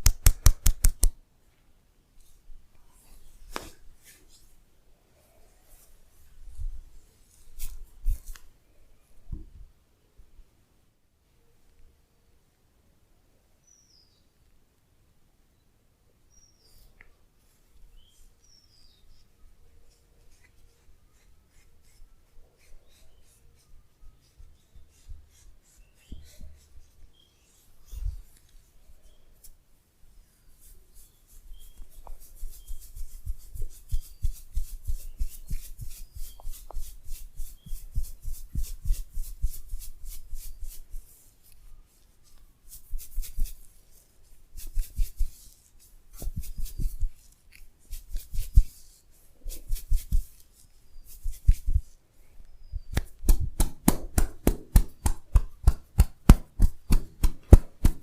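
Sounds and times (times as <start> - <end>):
hands tapping and chopping on body: 0.0 - 1.1, 52.9 - 58.0.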